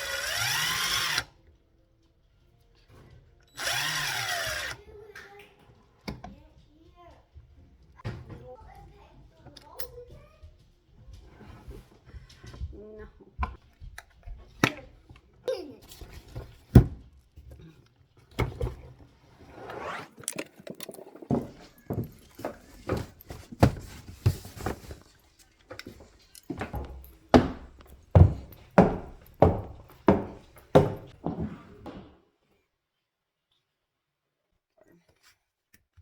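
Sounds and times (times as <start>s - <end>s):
hand tools clattering: 19.9s - 31.2s
evenly spaced knocks: 26.8s - 31.2s.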